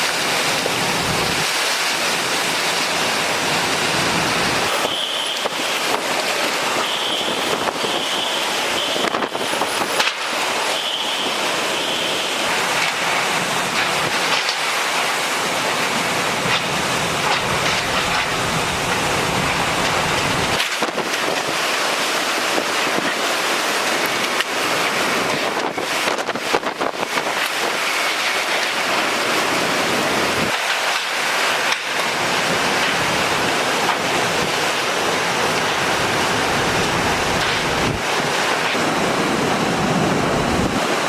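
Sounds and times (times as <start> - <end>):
hurricane wind and rain: 0.0 - 41.0
faint high whistle: 4.8 - 5.5.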